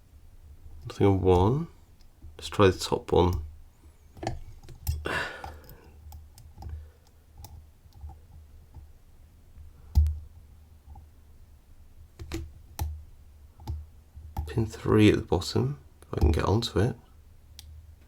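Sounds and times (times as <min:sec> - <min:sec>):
lock pick clicks and taps: 0:12.2 - 0:13.0.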